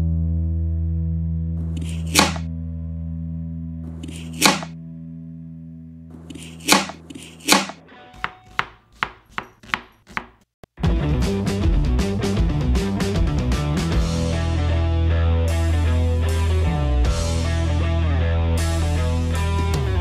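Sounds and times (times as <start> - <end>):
knife chopping on cutting board: 1.8 - 2.5, 4.0 - 4.7, 6.3 - 10.5.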